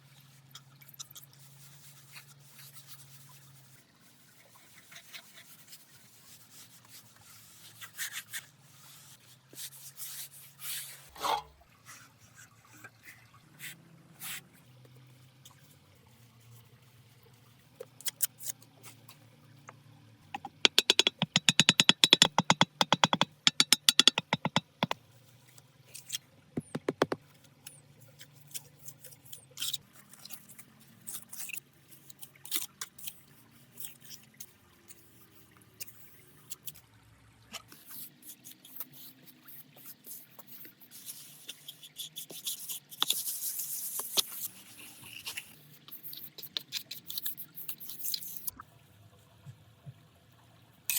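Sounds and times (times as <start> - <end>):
sharp clicks and taps: 20.4 - 25.0, 26.6 - 27.2.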